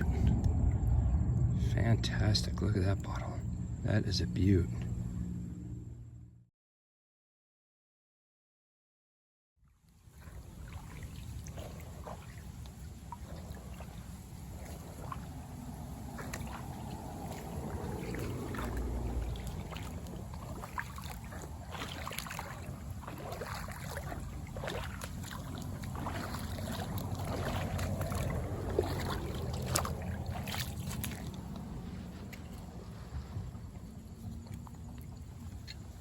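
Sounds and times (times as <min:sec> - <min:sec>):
wind rumble on microphone: 0:00.0 - 0:06.2, 0:10.0 - 0:36.0
shallow water sloshing and splashing: 0:09.6 - 0:36.0.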